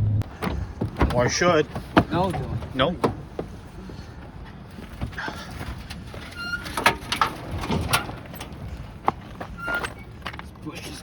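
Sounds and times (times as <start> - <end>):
road and engine noise in cab: 0.0 - 11.0
sharp clicks and knocks: 0.2 - 3.6.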